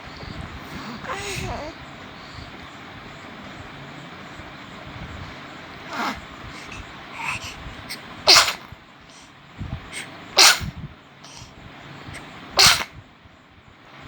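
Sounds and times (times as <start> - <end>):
baby sneezing: 0.7 - 1.7, 5.9 - 8.8, 9.9 - 11.5, 12.2 - 13.0.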